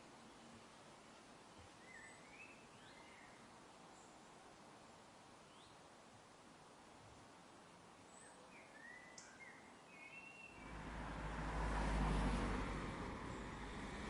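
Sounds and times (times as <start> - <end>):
thin bird chirps: 8.2 - 10.8
low rumbling noise: 10.6 - 14.0.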